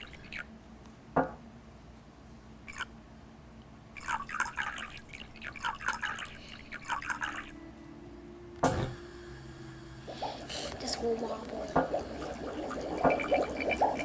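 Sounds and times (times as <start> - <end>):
liquid dripping into container: 8.6 - 14.0.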